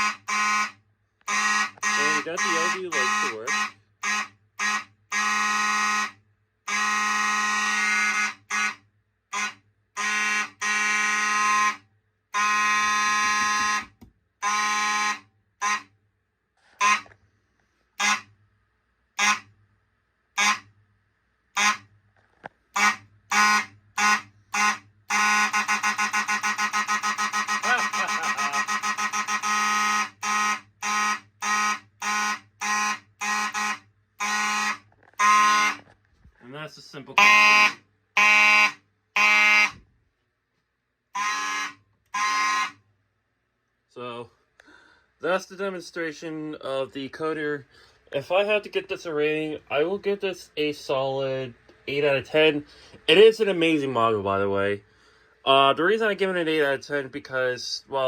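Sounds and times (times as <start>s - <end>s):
fire alarm horns buzzing: 0.0s - 16.0s, 16.7s - 17.2s, 17.9s - 18.3s, 19.2s - 19.6s, 20.3s - 20.8s, 21.5s - 21.9s, 22.7s - 36.0s, 37.1s - 39.8s, 41.1s - 42.9s.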